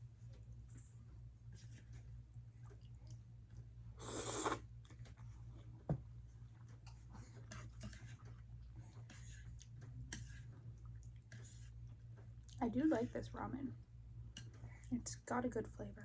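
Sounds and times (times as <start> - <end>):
low steady hum: 0.0 - 16.0
mouth clicks and chewing: 4.0 - 4.6.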